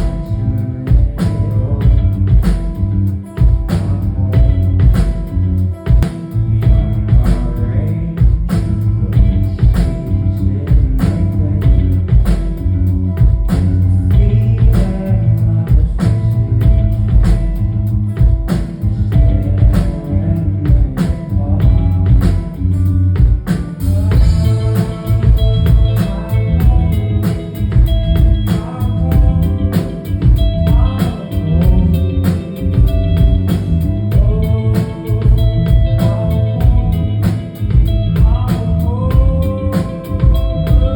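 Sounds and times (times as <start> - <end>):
person singing: 0.0 - 5.3, 5.9 - 17.7, 18.4 - 40.9
live rock band playing: 0.0 - 40.9
drum beat: 3.4 - 3.8, 13.2 - 15.0, 18.2 - 20.0, 23.2 - 38.5.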